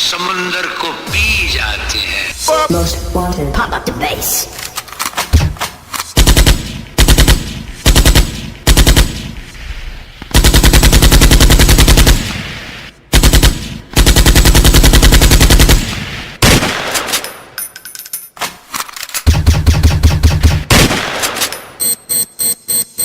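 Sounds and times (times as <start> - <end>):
machine-gun sound effect with bass: 6.2 - 9.4, 10.3 - 12.3, 13.2 - 16.6, 19.3 - 21.3.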